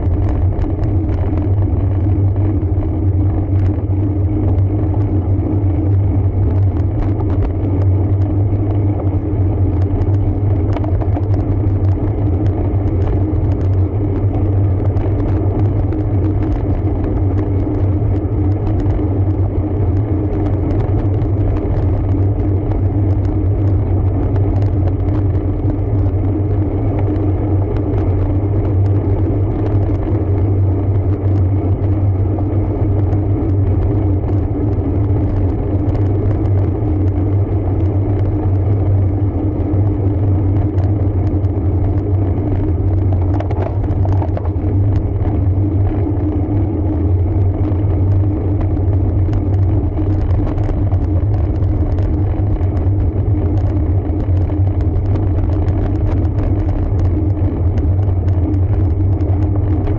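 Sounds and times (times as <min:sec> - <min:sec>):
bike riding rumble: 0:00.0 - 0:59.9
wind noise: 0:00.0 - 0:59.9.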